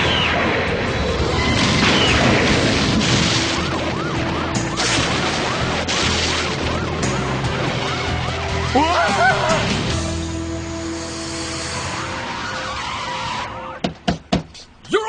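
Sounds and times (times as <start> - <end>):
background music: 0.0 - 14.8
crashing noise: 0.3 - 8.4
police siren wailing: 1.2 - 13.9.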